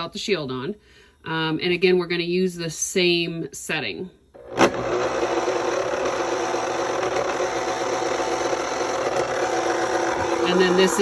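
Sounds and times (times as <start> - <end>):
blender motor whirring: 4.4 - 11.0.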